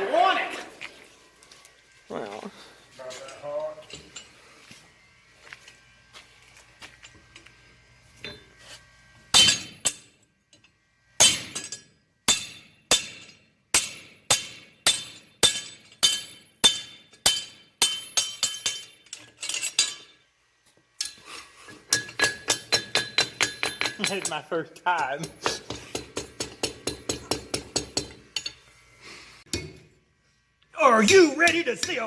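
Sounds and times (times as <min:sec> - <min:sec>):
hammer striking iron on anvil: 0:09.3 - 0:10.2, 0:11.2 - 0:20.2, 0:21.8 - 0:28.6, 0:29.5 - 0:29.9, 0:31.0 - 0:32.0.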